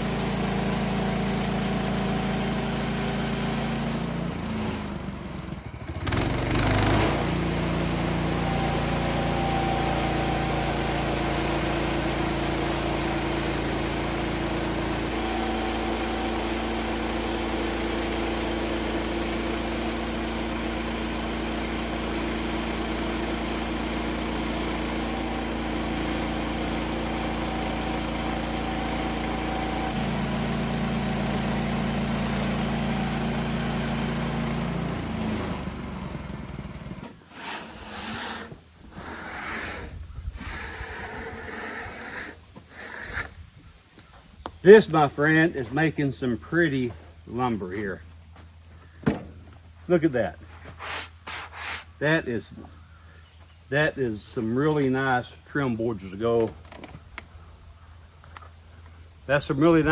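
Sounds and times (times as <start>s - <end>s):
small gasoline engine running: 0.0s - 42.9s.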